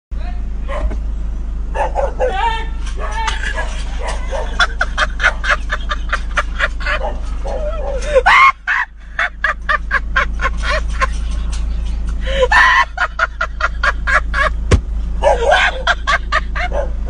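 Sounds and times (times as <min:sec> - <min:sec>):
man laughing hard: 0:03.1 - 0:11.4, 0:12.2 - 0:14.7, 0:15.3 - 0:17.0.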